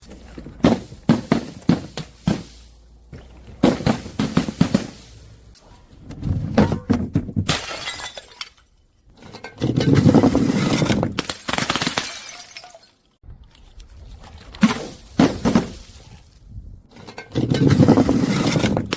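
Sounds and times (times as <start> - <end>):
glass shattering: 7.5 - 8.7, 9.3 - 13.2.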